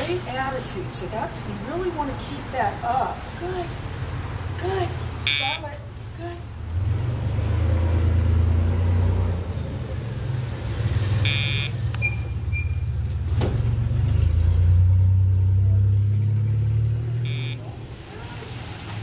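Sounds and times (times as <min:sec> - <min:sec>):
engine rumbling: 0:00.0 - 0:19.0
short high-pitched beep: 0:05.3 - 0:05.6, 0:11.3 - 0:12.8, 0:17.3 - 0:17.6.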